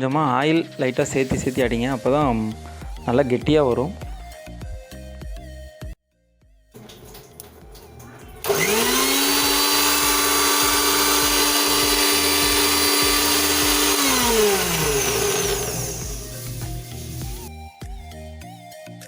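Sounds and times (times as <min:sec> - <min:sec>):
mixer grinder motor whine: 0:07.4 - 0:17.5.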